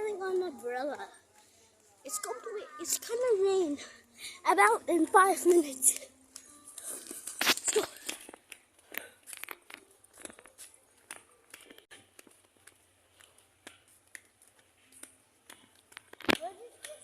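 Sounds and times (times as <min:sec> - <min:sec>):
faint clicks and taps: 0:08.0 - 0:17.0.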